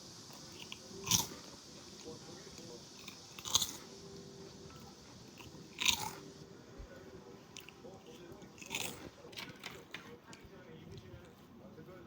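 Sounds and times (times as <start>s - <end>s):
faint chewing: 0.0s - 12.0s
crunch of biting crisp food: 0.4s - 1.4s, 3.0s - 3.9s, 5.4s - 6.2s, 7.6s - 9.8s.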